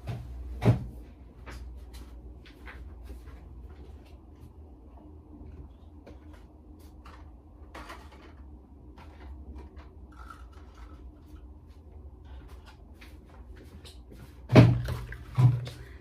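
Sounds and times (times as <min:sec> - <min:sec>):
low steady hum: 0:00.0 - 0:16.0
medicine boxes and bottles handled: 0:05.4 - 0:16.0.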